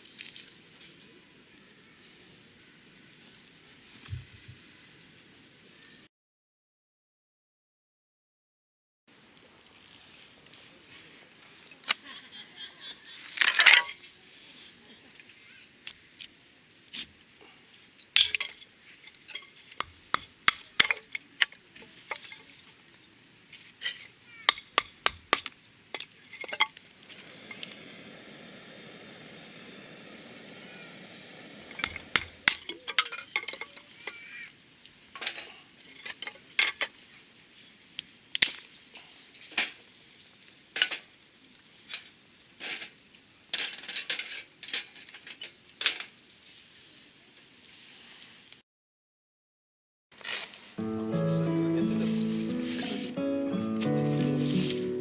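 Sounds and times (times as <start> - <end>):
steady hiss: 21.8 - 32.7.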